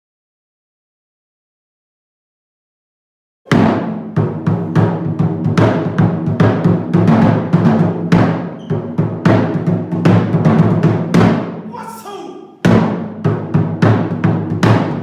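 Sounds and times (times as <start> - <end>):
taiko drums playing fast: 3.5 - 11.9, 12.6 - 15.0.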